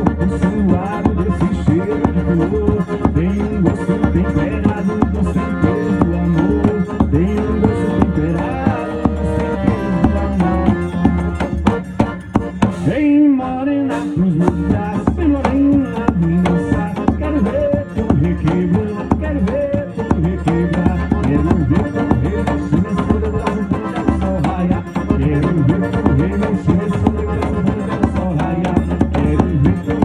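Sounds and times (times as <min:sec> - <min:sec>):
steady drum and percussion beat: 0:00.0 - 0:13.1, 0:13.9 - 0:30.0
band playing dance music: 0:00.0 - 0:30.0
melody line: 0:04.4 - 0:13.0.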